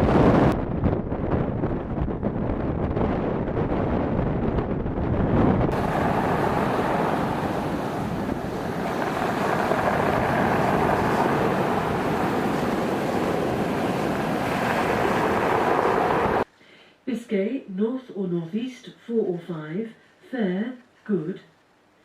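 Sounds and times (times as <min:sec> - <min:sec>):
wind blowing across microphone: 0:00.0 - 0:16.5.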